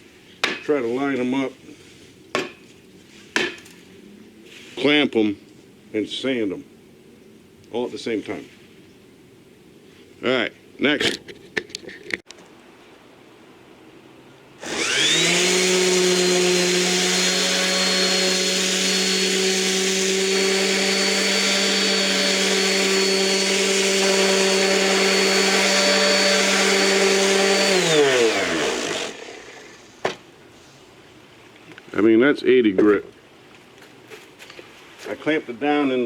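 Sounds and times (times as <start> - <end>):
electric sander on wood: 14.6 - 30.0.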